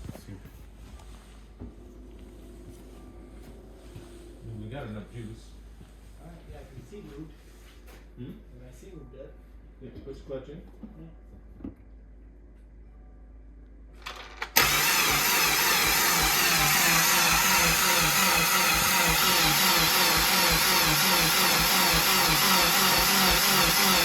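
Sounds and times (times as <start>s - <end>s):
starter cranking car engine: 14.0s - 24.0s.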